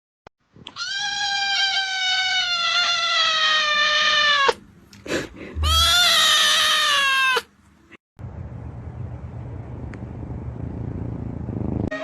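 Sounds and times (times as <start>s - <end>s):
cat yowling: 0.7s - 4.6s, 5.6s - 7.5s.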